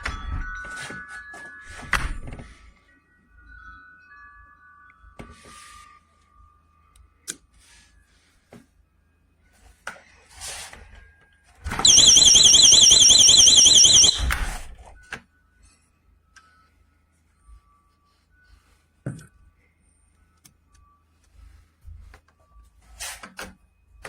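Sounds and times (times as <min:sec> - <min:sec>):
alarm siren warbling shriek: 0:11.8 - 0:14.6.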